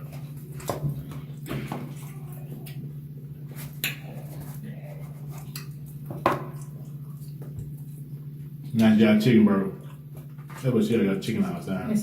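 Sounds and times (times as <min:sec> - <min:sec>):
close chewing with smacks: 0:00.0 - 0:08.9
steady low hum: 0:00.0 - 0:12.0.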